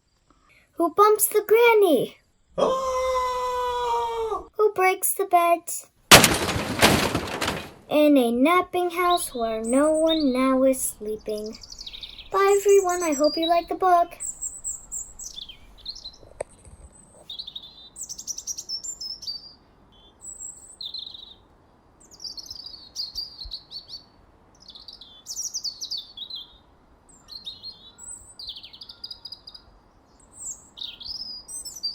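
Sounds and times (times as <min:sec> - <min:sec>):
songbirds chirping: 0:06.1 - 0:31.9.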